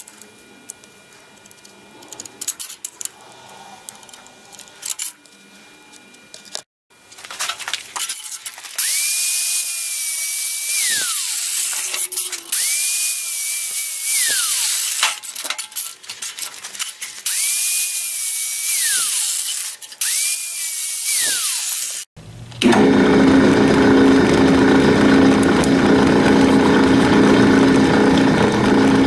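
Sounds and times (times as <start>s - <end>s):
power drill drilling metal: 8.1s - 15.9s, 16.8s - 29.0s.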